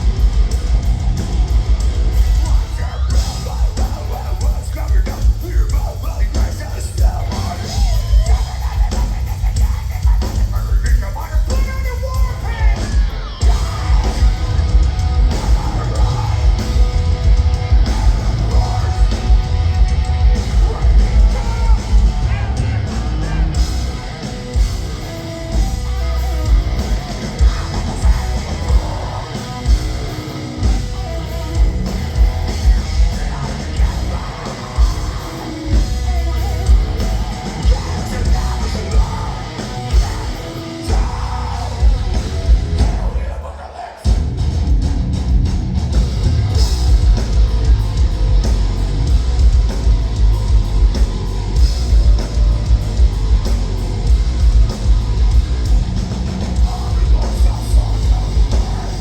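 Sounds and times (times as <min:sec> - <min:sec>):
distorted guitars: 0:00.0 - 0:59.0
heavy drums: 0:00.0 - 0:59.0
screamed vocals: 0:33.0 - 0:42.2.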